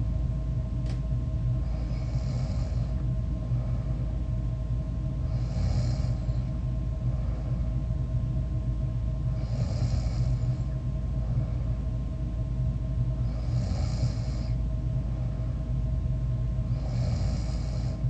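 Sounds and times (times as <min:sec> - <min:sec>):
low rumbling snore: 0:01.6 - 0:04.1, 0:05.2 - 0:07.7, 0:09.3 - 0:11.6, 0:13.2 - 0:15.4, 0:16.7 - 0:18.0.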